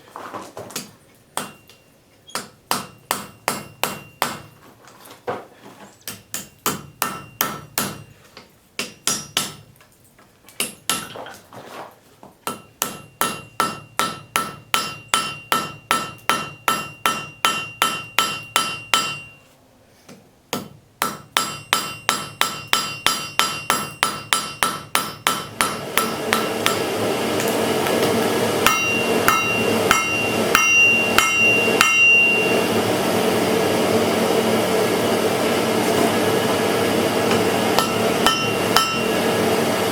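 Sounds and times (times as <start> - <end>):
hammer striking iron on anvil: 1.4 - 4.6, 6.1 - 8.2, 8.8 - 9.7, 10.6 - 11.1, 12.4 - 19.4, 20.5 - 32.7, 37.3 - 39.3.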